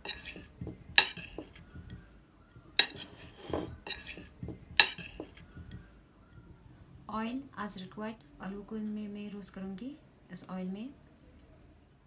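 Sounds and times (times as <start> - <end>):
spoon clinking against bowl: 0.0 - 2.0, 2.8 - 5.4
soft knocks: 0.3 - 6.6.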